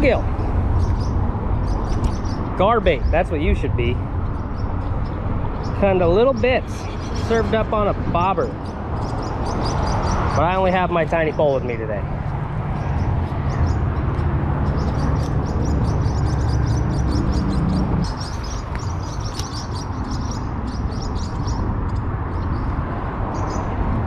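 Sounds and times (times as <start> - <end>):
birds chirping: 0.0 - 23.8
highway traffic rumbling: 0.0 - 24.0.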